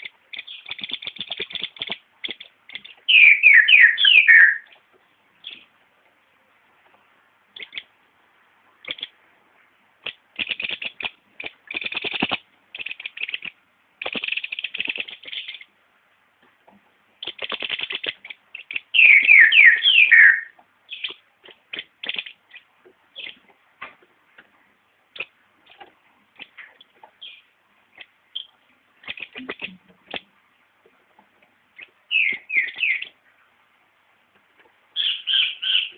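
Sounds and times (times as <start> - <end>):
bird calling: 0.0 - 4.7, 18.6 - 21.2, 31.8 - 33.2, 35.0 - 35.9.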